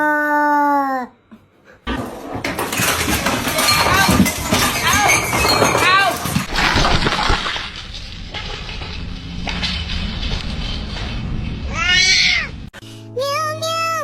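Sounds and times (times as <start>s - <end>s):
cat meowing: 11.7s - 12.6s.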